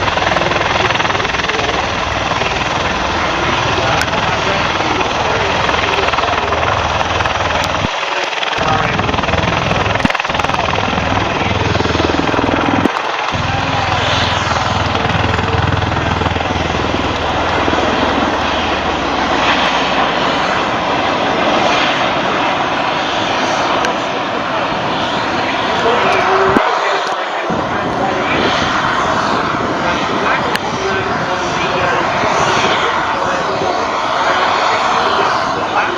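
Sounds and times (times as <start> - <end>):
helicopter engine and rotor: 0.0 - 35.9
low hum: 8.6 - 21.5.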